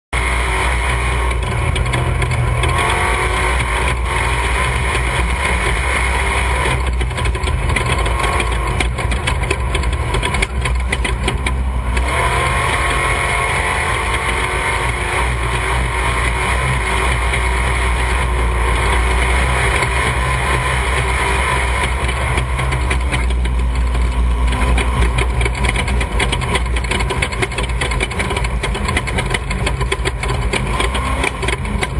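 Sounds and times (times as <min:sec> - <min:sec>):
vehicle engine running: 0:00.1 - 0:31.9
steady rush of noise: 0:00.2 - 0:31.9.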